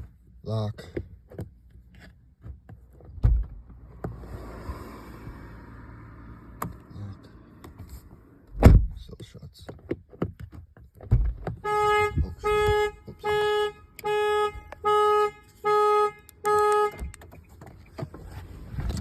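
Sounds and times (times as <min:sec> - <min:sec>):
car horn honking: 0:11.5 - 0:17.3.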